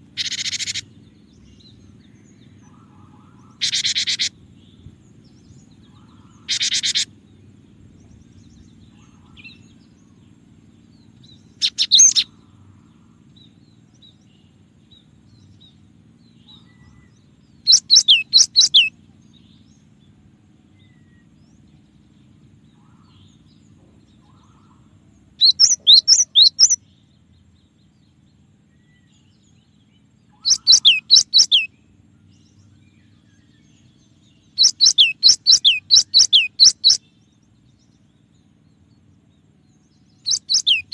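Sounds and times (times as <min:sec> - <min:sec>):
bird singing high whistled notes: 0:11.6 - 0:12.3, 0:17.6 - 0:18.9, 0:25.4 - 0:26.8, 0:30.4 - 0:31.7, 0:34.6 - 0:37.1, 0:40.1 - 0:40.9.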